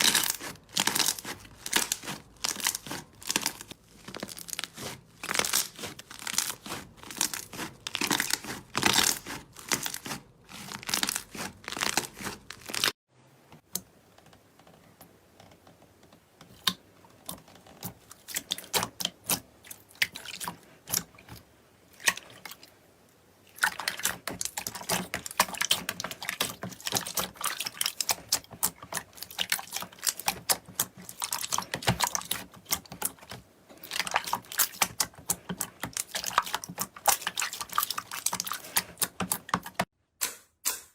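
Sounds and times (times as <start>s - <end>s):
slime squeezed crackling and popping: 0.0s - 12.9s.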